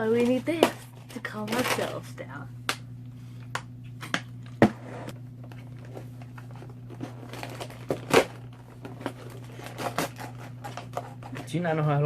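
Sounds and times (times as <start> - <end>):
cardboard box crinkling and tearing: 7.0 - 8.4.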